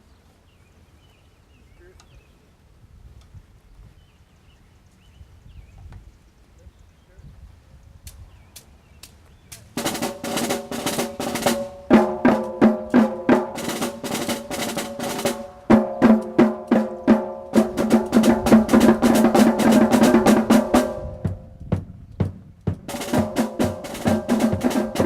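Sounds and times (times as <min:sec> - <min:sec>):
drumline playing snare and bass drums: 0:09.5 - 0:25.0.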